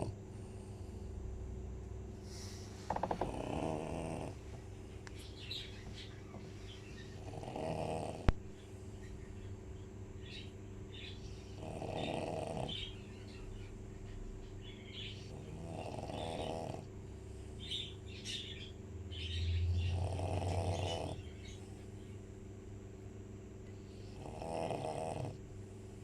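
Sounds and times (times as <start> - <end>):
dog snoring: 0.0 - 0.8, 2.2 - 4.5, 7.0 - 8.4, 11.5 - 13.0, 15.0 - 17.0, 19.5 - 21.3, 23.9 - 25.4.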